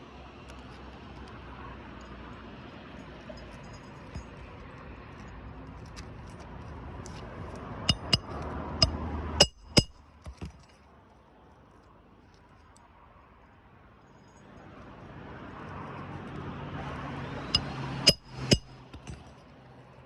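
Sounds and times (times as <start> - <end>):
steady rumble: 7.9 - 10.0
sharp metallic clinks and taps: 7.9 - 10.6, 17.5 - 19.4.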